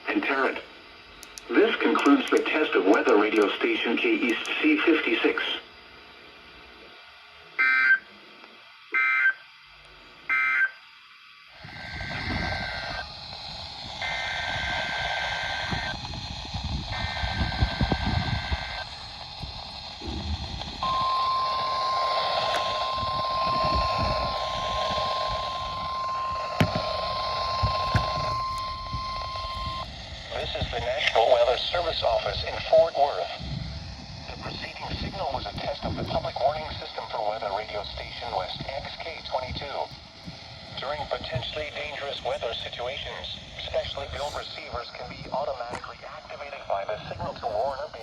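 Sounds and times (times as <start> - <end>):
radio static: 0.0 - 5.7, 11.6 - 48.0
steady warning alarm tone: 0.0 - 5.7, 7.0 - 8.2, 8.8 - 48.0
warbling data bursts: 11.6 - 48.0.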